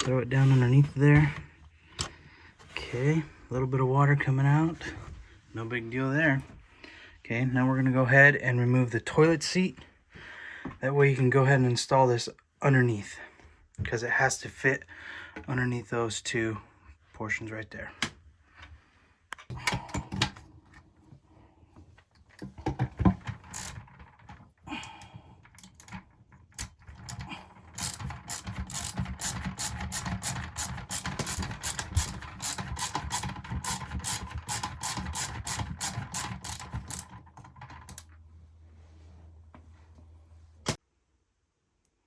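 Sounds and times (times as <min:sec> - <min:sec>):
hand ratchet clicking: 0:23.5 - 0:23.9, 0:26.6 - 0:37.1.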